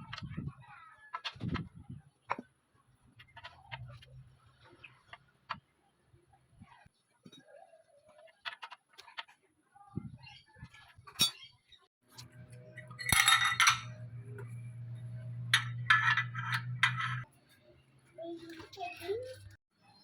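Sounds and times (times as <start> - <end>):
metal tools clinking: 12.7 - 14.1.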